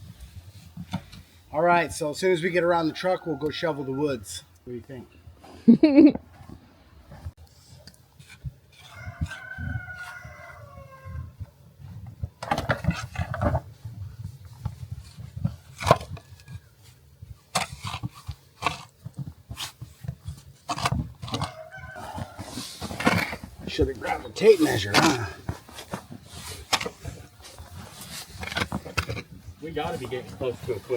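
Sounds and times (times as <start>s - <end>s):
rooster crowing: 2.8s - 4.2s, 8.8s - 11.3s, 21.4s - 23.0s.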